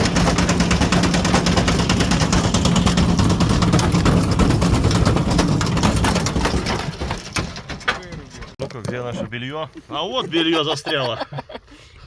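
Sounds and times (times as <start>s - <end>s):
washing machine motor hum: 0.0s - 6.3s
brick knocking in drum: 0.0s - 9.2s.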